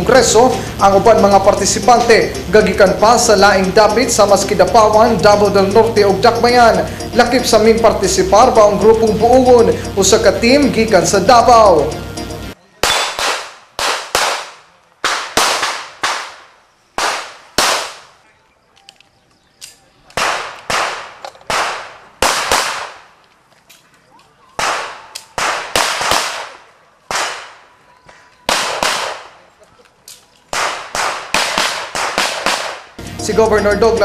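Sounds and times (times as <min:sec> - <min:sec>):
pistol shots: 0:12.8 - 0:18.1, 0:20.1 - 0:23.1, 0:24.6 - 0:27.7, 0:28.5 - 0:29.4, 0:30.5 - 0:33.0.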